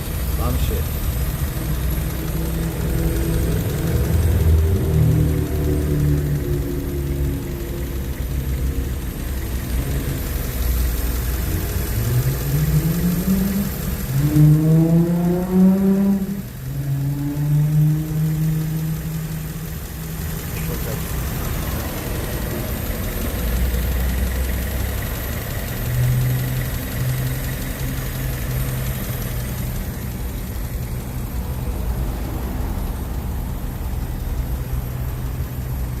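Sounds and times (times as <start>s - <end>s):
car engine idling and revving: 0.0s - 36.0s.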